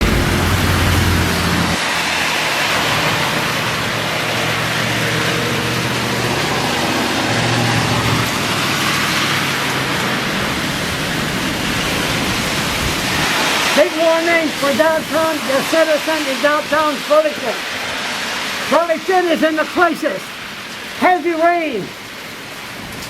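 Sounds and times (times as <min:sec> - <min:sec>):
vehicle engine humming: 0:00.0 - 0:13.1
heavy rain pouring: 0:00.0 - 0:23.0.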